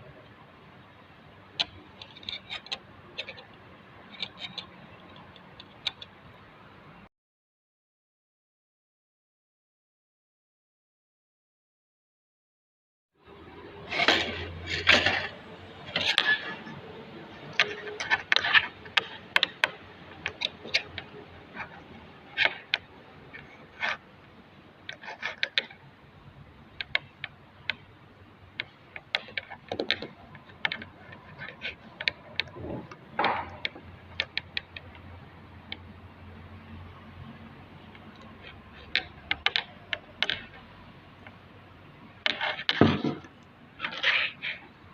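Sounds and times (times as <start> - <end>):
hand tools clicking and knocking: 28.6 - 35.0.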